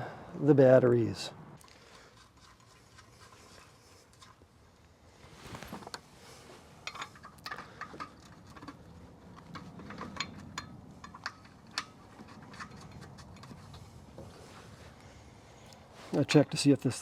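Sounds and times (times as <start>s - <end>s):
metal bolts clinking: 6.9s - 13.9s.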